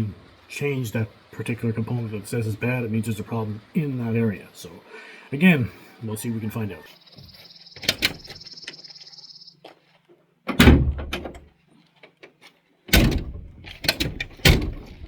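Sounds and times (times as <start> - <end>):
truck door clunks and knocks: 7.8 - 8.4, 10.5 - 11.5, 12.9 - 15.0.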